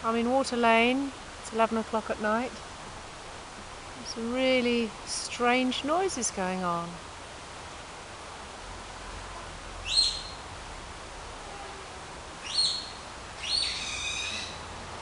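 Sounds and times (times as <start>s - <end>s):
steady hiss: 0.0s - 15.0s
squeaky animal calls: 12.5s - 14.6s.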